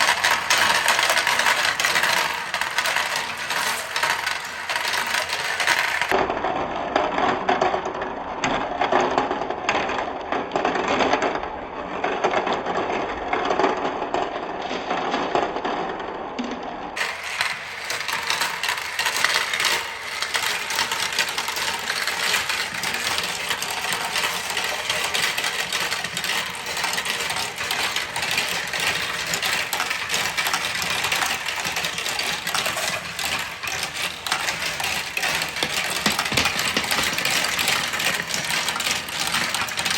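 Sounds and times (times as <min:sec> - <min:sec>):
marbles rattling down wooden tracks: 0:00.0 - 0:06.2, 0:17.0 - 0:39.9.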